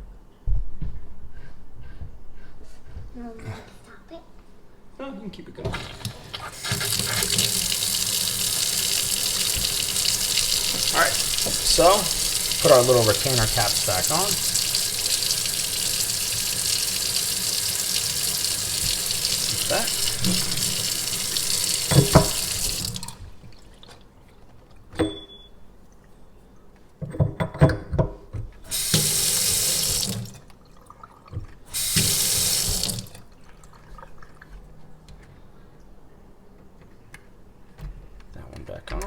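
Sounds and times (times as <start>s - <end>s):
water running from faucet: 5.6s - 23.9s, 28.7s - 34.1s
faucet handles clicking and knocking: 6.6s - 7.8s, 8.6s - 14.6s, 18.8s - 23.1s, 27.0s - 28.2s.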